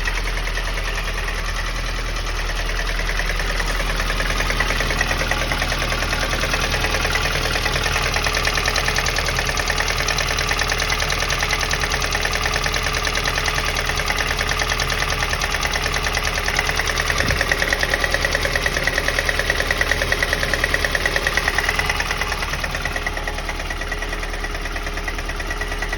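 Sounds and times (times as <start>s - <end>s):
car engine running: 0.0s - 25.9s
fast regular engine knock: 0.0s - 25.9s.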